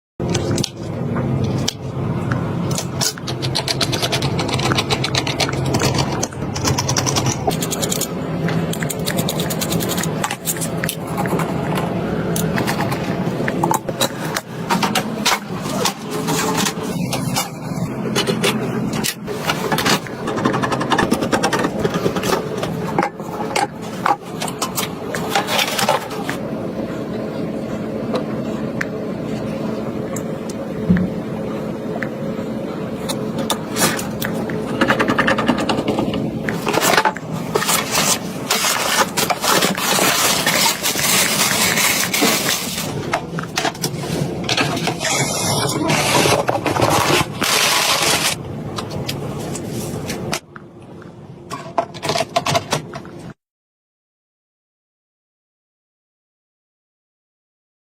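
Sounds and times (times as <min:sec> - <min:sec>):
metal and plastic scraping: 0:00.2 - 0:26.5, 0:33.0 - 0:50.5, 0:51.5 - 0:53.4
steady low hum: 0:00.2 - 0:53.4
clicks and knocks of computer parts: 0:51.5 - 0:53.3.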